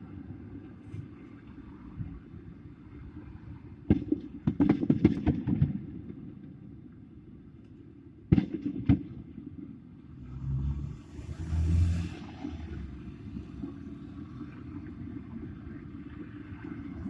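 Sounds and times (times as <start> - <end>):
low city rumble: 0.0 - 17.0
sharp pops or cracks: 8.3 - 9.4.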